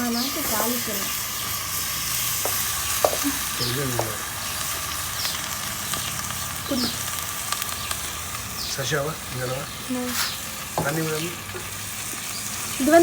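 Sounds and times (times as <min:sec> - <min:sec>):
food sizzling in hot oil: 0:00.0 - 0:13.0.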